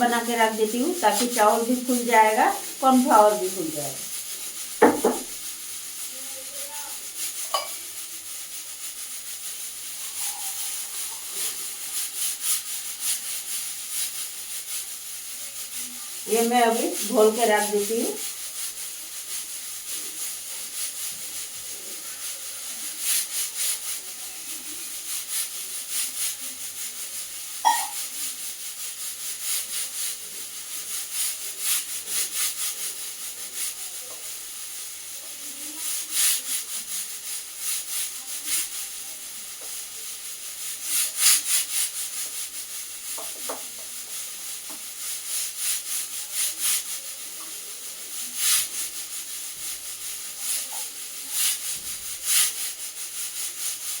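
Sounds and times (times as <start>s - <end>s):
spoon scraping batter in bowl: 7.1s - 7.9s, 8.7s - 14.2s.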